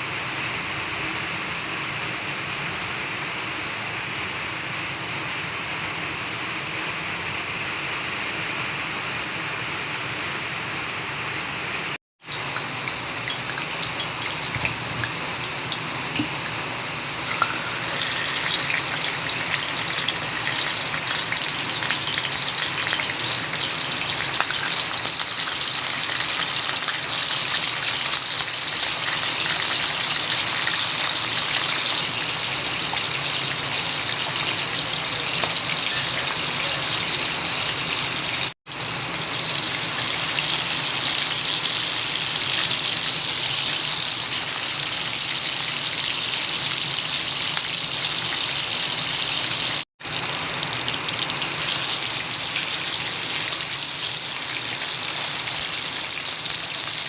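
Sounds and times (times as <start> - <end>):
fish sizzling in hot oil: 0.0 - 57.0.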